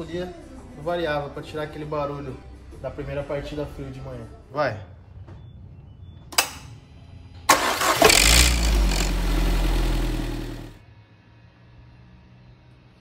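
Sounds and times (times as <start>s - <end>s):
car engine starting and running: 7.5s - 10.8s.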